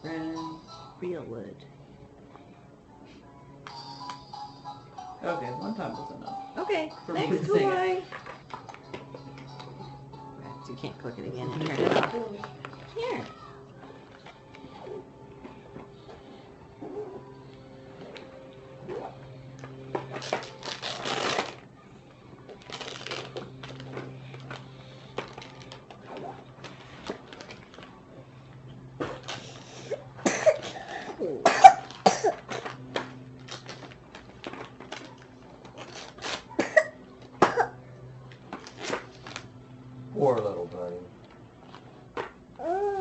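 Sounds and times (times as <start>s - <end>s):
person coughing: 30.2s - 32.4s, 36.6s - 37.8s.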